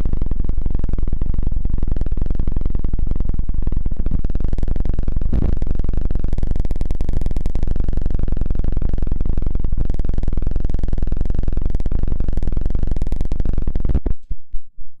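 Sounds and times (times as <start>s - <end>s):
rustling and scratching on microphone: 5.2s - 5.8s, 13.8s - 14.7s.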